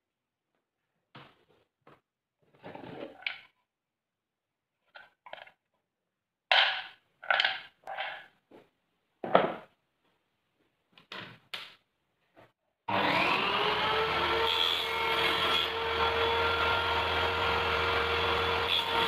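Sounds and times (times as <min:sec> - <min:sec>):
wooden pieces knocking and scraping: 0:01.2 - 0:03.6, 0:04.8 - 0:05.8, 0:06.5 - 0:09.8
power tool running: 0:12.9 - 0:19.0.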